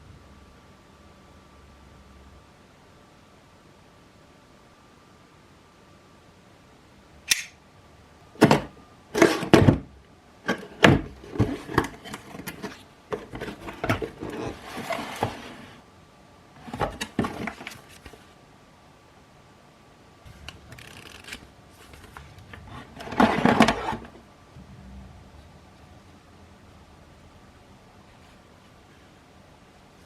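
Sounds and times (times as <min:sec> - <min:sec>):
knocks and thuds of handling: 0:08.4 - 0:09.9.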